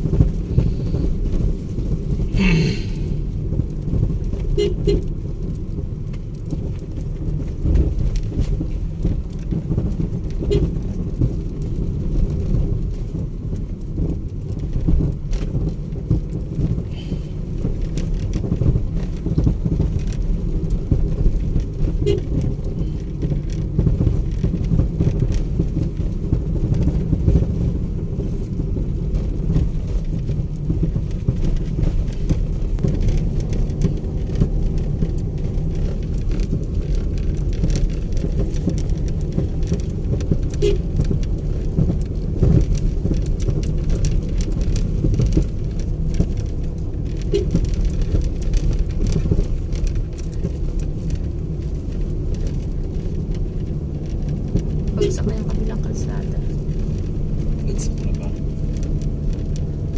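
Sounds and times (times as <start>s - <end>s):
vehicle engine and tyres rumbling: 0.0s - 59.9s
small knocks and rattles: 17.5s - 59.9s.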